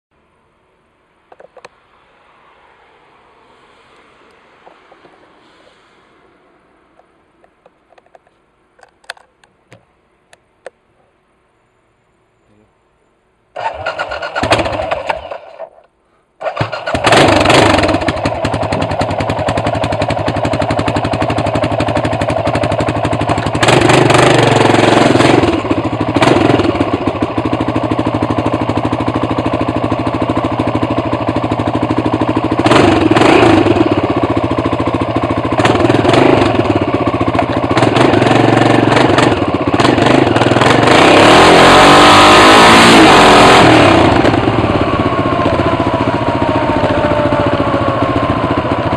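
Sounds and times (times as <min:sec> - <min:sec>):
motorcycle engine revving: 0:13.6 - 0:15.8, 0:16.4 - 0:48.9.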